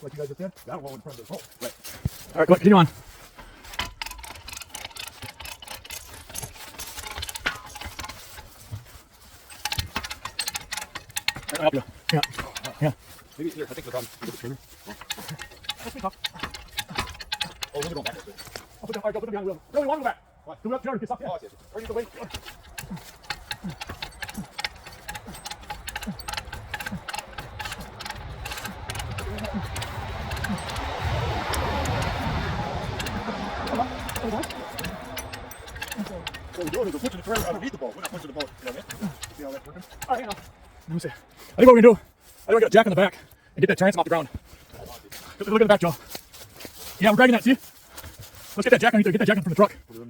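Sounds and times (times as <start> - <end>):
hand winch ratcheting: 1.2 - 20.1, 21.4 - 50.0
low rumble: 25.2 - 37.8.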